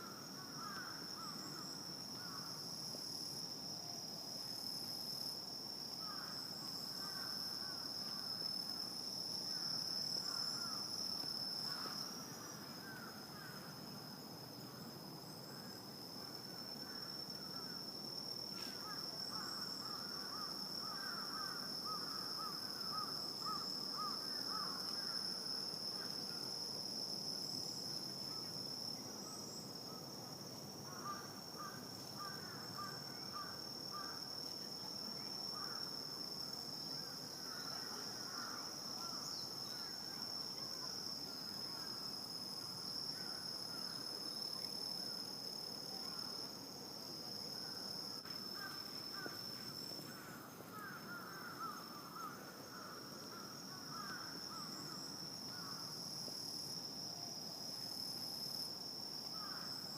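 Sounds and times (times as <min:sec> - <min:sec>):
crickets trilling: 0:00.0 - 0:59.9.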